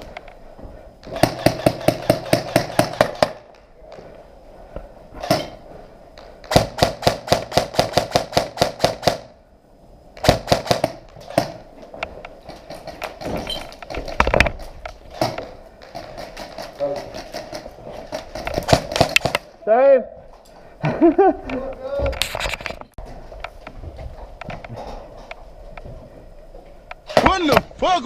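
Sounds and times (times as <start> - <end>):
airsoft guns firing: 1.0 - 3.6, 6.4 - 9.3, 10.2 - 11.7, 15.1 - 19.6.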